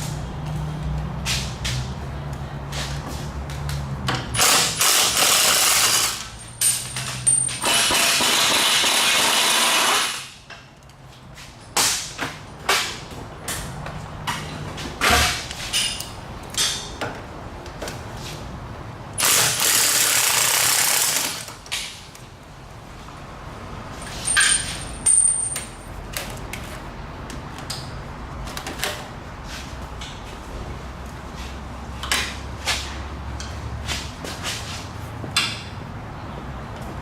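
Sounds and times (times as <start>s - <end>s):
tools clanking on metal: 14.3s - 17.2s, 24.0s - 25.9s.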